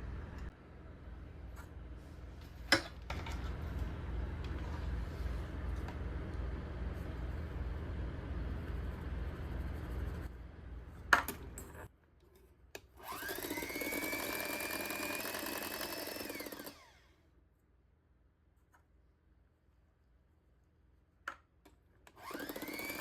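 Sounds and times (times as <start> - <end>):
kitchen appliance motor whining: 13.0 - 17.2, 22.1 - 23.0.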